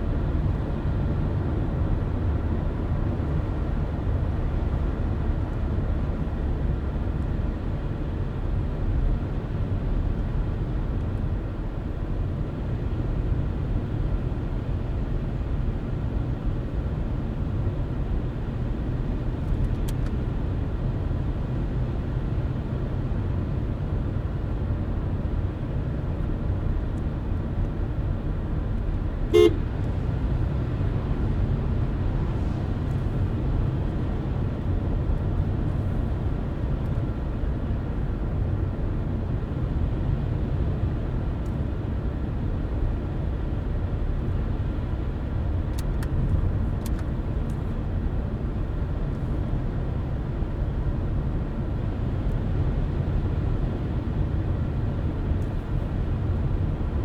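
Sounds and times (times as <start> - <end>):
car road and engine rumble: 0.0 - 57.0
short horn beep: 29.3 - 29.6.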